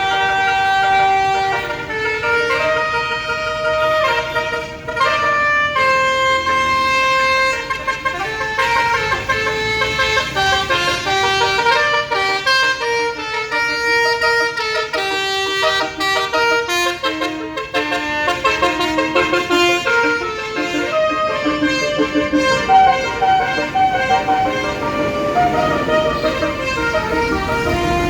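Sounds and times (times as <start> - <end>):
bus air horn playing melody: 0.0 - 28.0.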